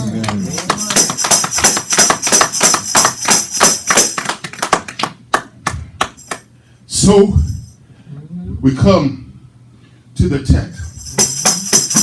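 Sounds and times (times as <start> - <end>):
tambourine jingling: 0.0 - 4.7, 6.1 - 6.6, 7.2 - 7.8, 10.7 - 12.0.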